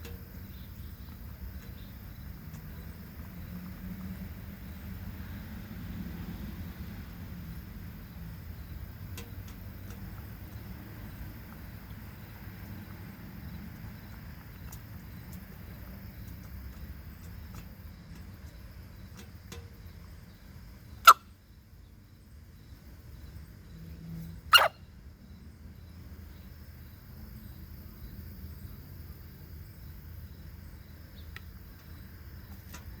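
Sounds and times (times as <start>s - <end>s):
faint ticks: 0.0s - 4.2s, 9.1s - 12.0s, 14.1s - 20.0s
chicken sneezing: 24.5s - 24.7s.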